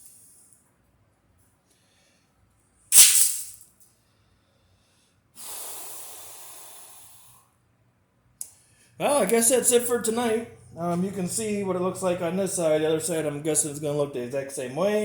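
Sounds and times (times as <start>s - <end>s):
blowing air hiss: 5.4s - 7.4s.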